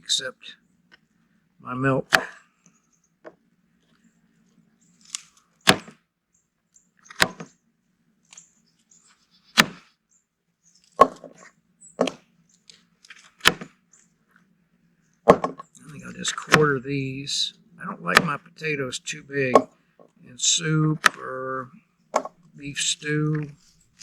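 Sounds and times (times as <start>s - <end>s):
knife chopping potatoes: 2.1s - 2.4s, 5.7s - 6.0s, 7.1s - 7.5s, 9.6s - 9.8s, 13.4s - 13.7s, 16.3s - 16.7s, 18.1s - 18.4s.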